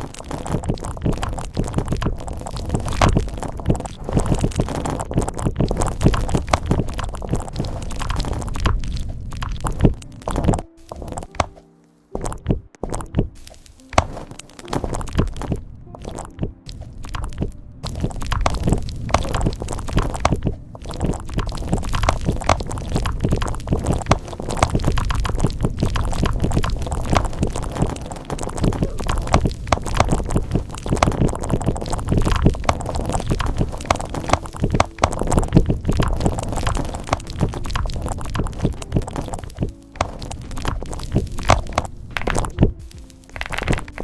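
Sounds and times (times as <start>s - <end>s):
fast typing on a keyboard: 0.0s - 11.6s, 17.2s - 44.0s.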